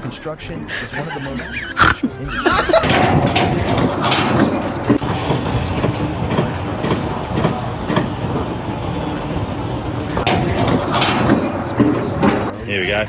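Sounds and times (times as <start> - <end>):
clanks and clatter: 2.7 - 9.1, 9.7 - 12.6
mechanical rumbling: 2.8 - 8.9, 9.7 - 12.6.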